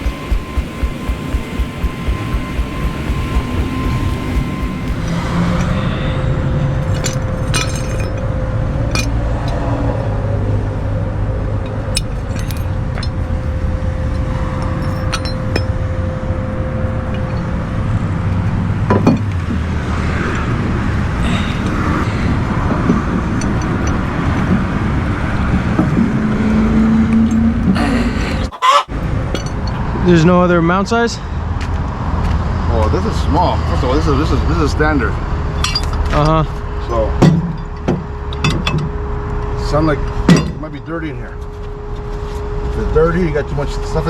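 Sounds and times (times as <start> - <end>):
vehicle engine idling: 0.0 - 28.3
metallic clinks: 6.8 - 8.3, 8.9 - 9.7, 11.7 - 13.4, 14.1 - 15.8.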